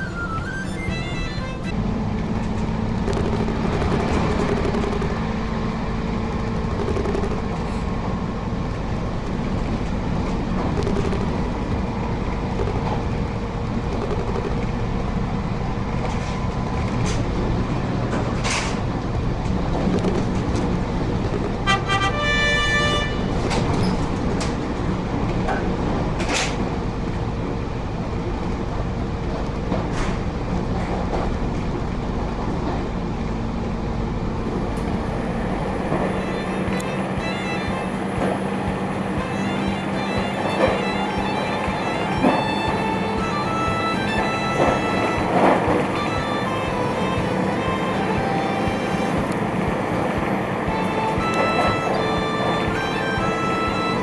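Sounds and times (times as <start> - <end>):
train running rumble: 0.0 - 54.0
train horn: 21.6 - 24.0, 34.5 - 54.0.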